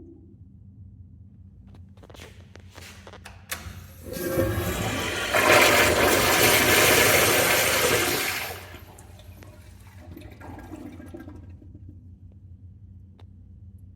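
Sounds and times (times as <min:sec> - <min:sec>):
low hum: 0:00.0 - 0:05.0
toilet flushing: 0:03.6 - 0:11.9.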